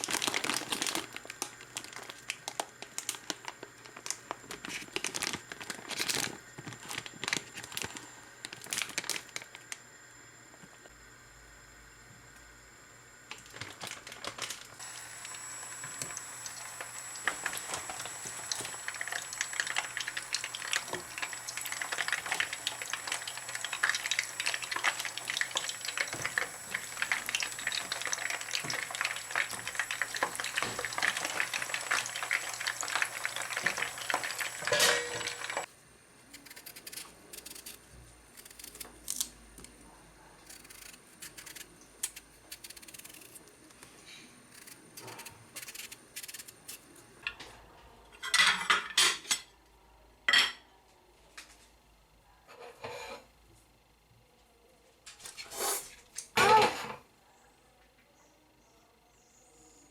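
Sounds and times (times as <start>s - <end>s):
food sizzling in a frying pan: 14.8s - 35.7s.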